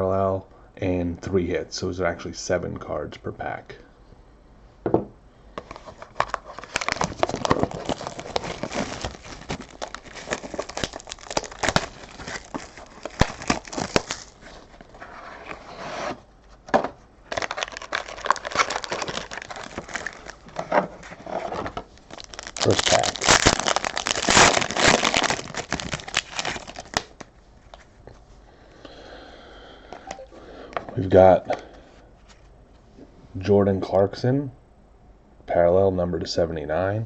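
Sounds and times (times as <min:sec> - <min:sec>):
packaging crinkling and tearing: 0:05.6 - 0:15.6, 0:17.3 - 0:27.9.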